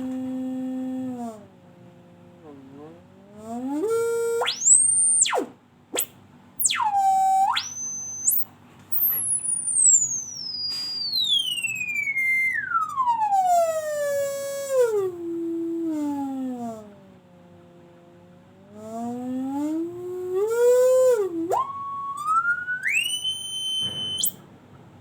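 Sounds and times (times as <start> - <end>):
electronic tone sliding in pitch: 2.4 - 16.9, 18.8 - 24.4.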